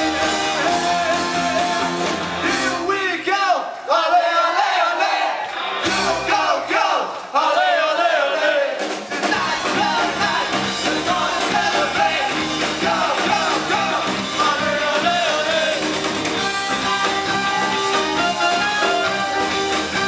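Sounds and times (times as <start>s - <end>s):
live rock band playing: 0.0s - 3.0s, 5.5s - 6.6s, 8.8s - 20.0s
person singing: 0.0s - 3.0s, 9.2s - 15.9s
sustained guitar chords: 9.6s - 20.0s.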